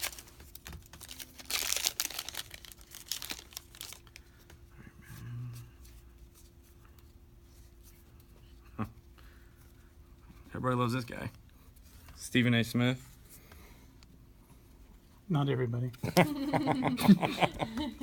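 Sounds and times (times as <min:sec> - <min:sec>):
foil wrapper crinkling: 0:00.0 - 0:04.4.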